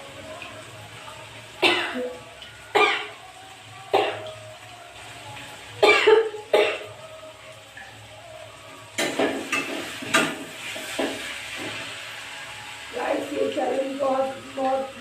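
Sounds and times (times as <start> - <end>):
food sizzling in a pan: 0.0 - 15.0
woman coughing: 2.8 - 3.1, 5.8 - 6.8.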